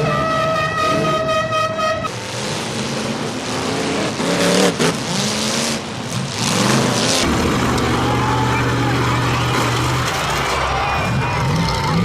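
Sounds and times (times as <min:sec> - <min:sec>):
car horn blaring: 0:00.0 - 0:02.1
car engines revving: 0:00.0 - 0:12.0.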